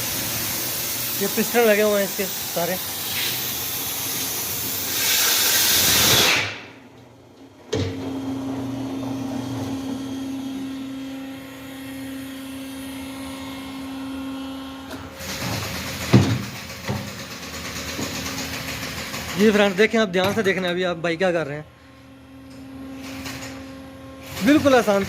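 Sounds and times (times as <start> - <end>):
machine motor humming: 0.0 - 4.8, 7.2 - 21.0
compressed air hissing: 0.0 - 6.6.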